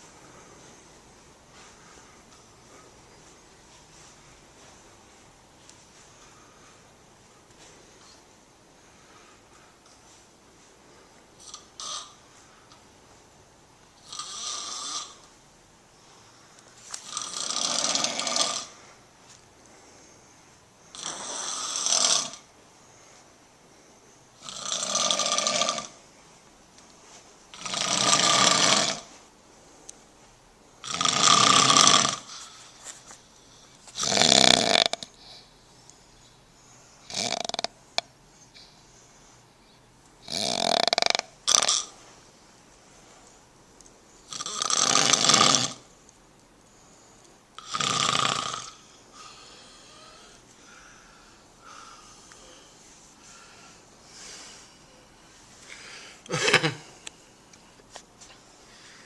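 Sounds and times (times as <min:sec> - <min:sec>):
person snoring: 0:11.4 - 0:12.2, 0:14.0 - 0:15.3, 0:17.0 - 0:18.8, 0:20.9 - 0:22.5, 0:24.4 - 0:26.0, 0:27.5 - 0:29.1, 0:30.8 - 0:32.4, 0:34.0 - 0:35.1, 0:37.0 - 0:37.8, 0:40.2 - 0:41.9, 0:44.3 - 0:45.9, 0:47.6 - 0:51.0.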